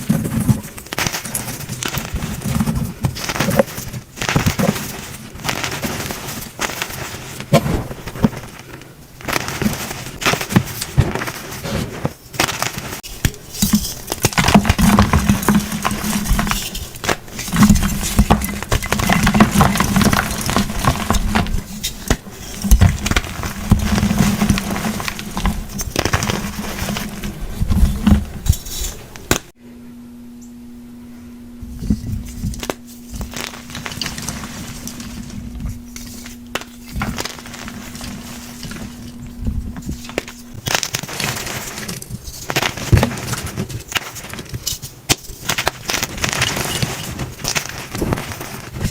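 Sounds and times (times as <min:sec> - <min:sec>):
faint steady hum: 0:00.0 - 0:48.9
chalk crunching: 0:32.2 - 0:48.9.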